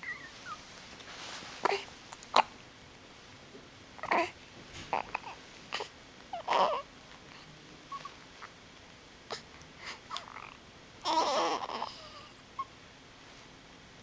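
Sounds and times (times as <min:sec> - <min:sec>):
baby fussing: 0:04.0 - 0:06.9, 0:09.3 - 0:12.7
baby grunts and squeaks: 0:10.1 - 0:12.3.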